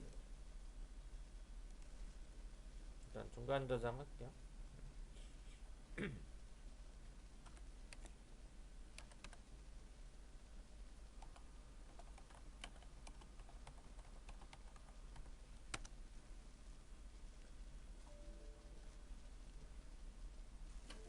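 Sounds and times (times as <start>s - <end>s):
keyboard and mouse clicks: 7.4s - 8.1s, 8.9s - 9.4s, 11.2s - 16.0s.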